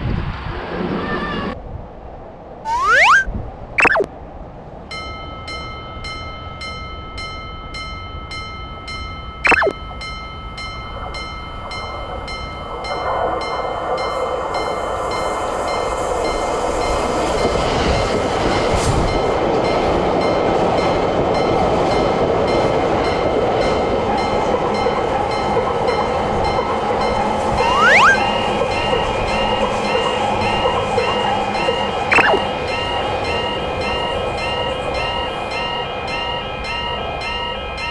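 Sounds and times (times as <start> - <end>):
short rising tone: 2.7 - 4.1, 9.5 - 9.7, 27.6 - 28.4, 32.1 - 32.4.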